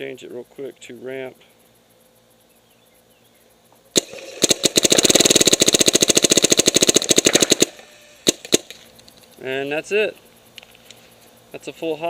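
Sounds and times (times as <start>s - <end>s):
paintball marker firing: 3.9s - 8.9s.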